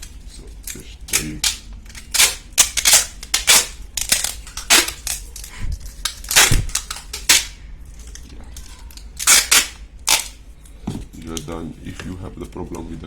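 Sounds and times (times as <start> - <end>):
adhesive tape pulled off roll: 1.1 - 7.5, 9.2 - 10.3.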